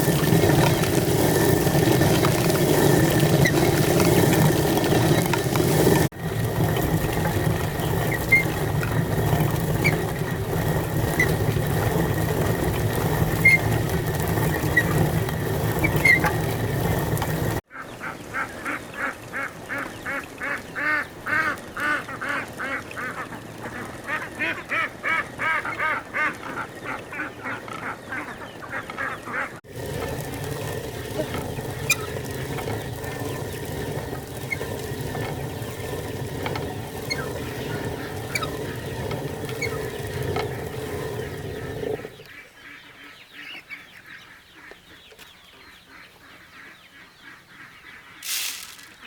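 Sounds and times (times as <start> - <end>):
ducks quacking: 17.7 - 29.6, 30.5 - 49.0.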